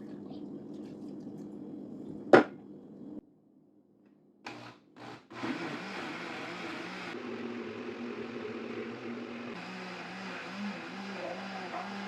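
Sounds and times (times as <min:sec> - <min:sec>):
electric blender running: 0:04.5 - 0:12.0.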